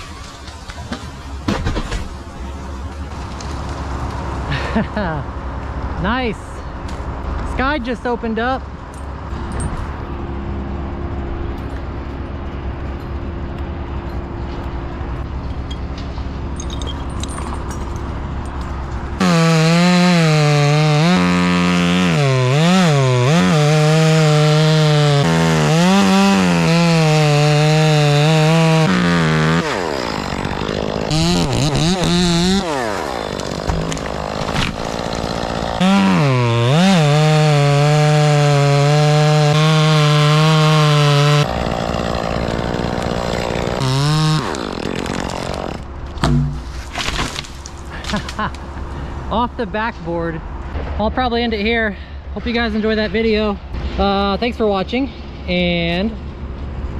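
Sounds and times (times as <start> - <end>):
chainsaw cutting wood: 19.2 - 48.4.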